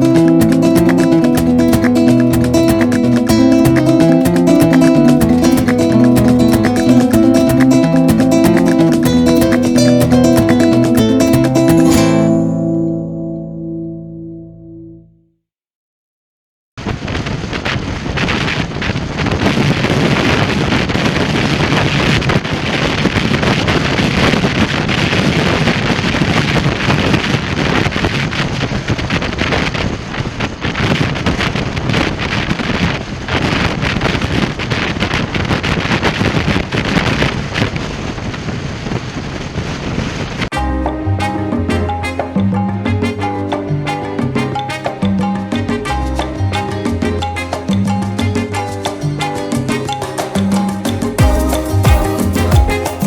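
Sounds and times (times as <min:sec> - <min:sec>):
wind buffeting a microphone: 0:16.8 - 0:40.5.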